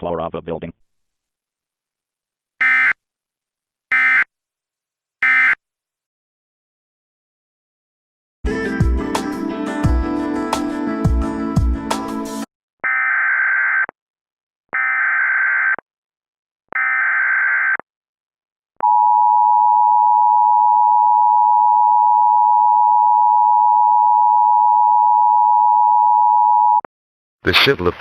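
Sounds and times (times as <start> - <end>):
music: 8.4 - 12.5.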